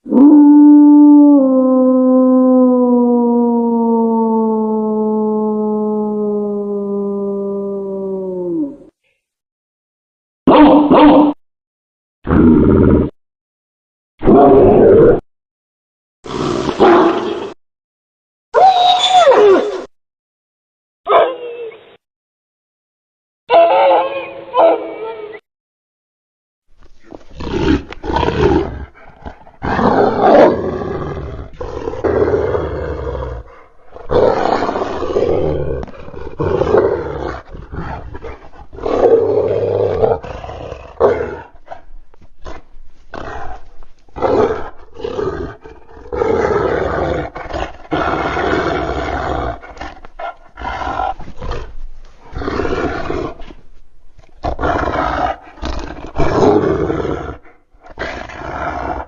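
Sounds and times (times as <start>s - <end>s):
creature roars and growls: 0.0s - 9.0s, 12.2s - 13.2s, 14.2s - 15.2s, 16.3s - 17.6s, 27.4s - 41.6s.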